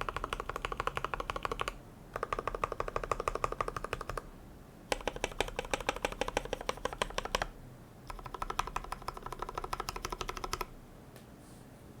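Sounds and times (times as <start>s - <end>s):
typing on mechanical keyboard: 0.0s - 4.3s, 4.9s - 7.5s, 8.1s - 10.7s.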